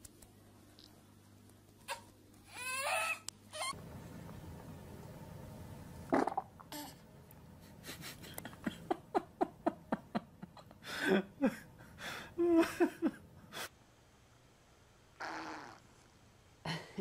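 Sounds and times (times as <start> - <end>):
baby squealing: 1.9 - 3.8.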